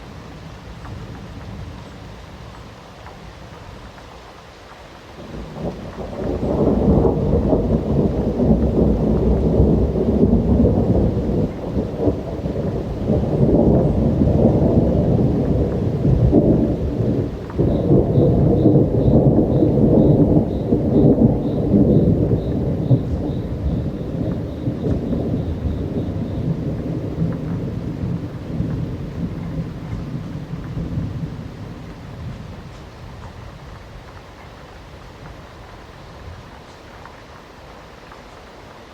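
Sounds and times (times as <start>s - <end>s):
steady rain: 0.0s - 38.9s
rolling thunder: 5.2s - 34.2s.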